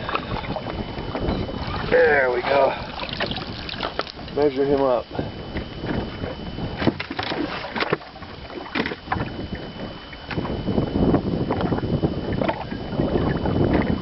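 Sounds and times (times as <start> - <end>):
faint steady high tone: 0.0 - 3.1, 3.9 - 6.7
knocks and clatter in a boat: 0.0 - 14.0.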